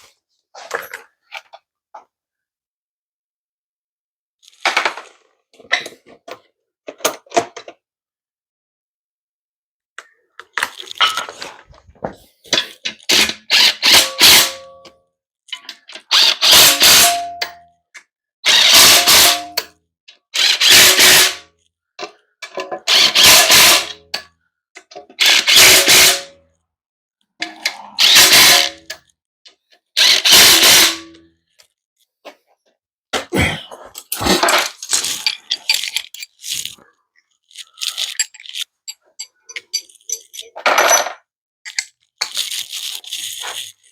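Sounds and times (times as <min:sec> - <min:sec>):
power tool bursts: 0:13.2 - 0:14.5, 0:16.1 - 0:17.2, 0:18.5 - 0:19.4, 0:20.4 - 0:21.4, 0:22.9 - 0:23.9, 0:28.0 - 0:28.8, 0:30.0 - 0:31.0.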